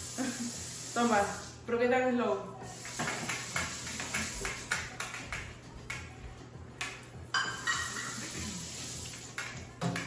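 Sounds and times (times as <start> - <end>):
dishes and utensils clattering: 2.8 - 6.1, 6.8 - 10.0.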